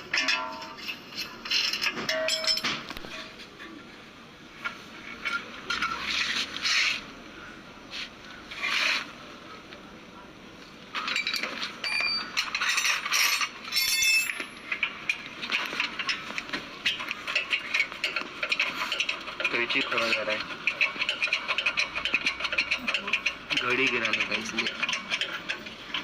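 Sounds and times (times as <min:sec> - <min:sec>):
metal tools clinking on car parts: 0:00.0 - 0:03.3, 0:11.0 - 0:26.0.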